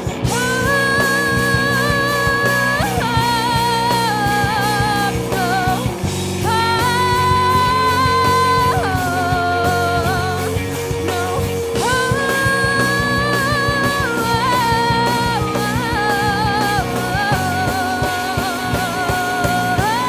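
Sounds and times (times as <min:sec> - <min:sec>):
lead melody of long held notes: 0:00.0 - 0:20.0
live rock band playing: 0:00.0 - 0:20.0.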